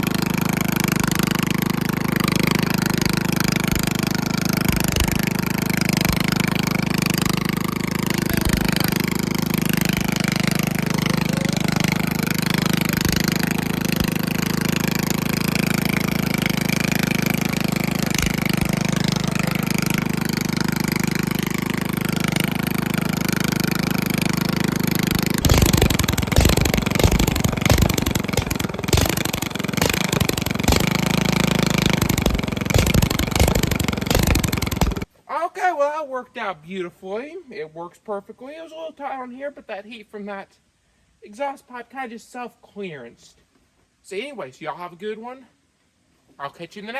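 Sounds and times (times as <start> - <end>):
riding mower engine running: 0.0 - 35.1.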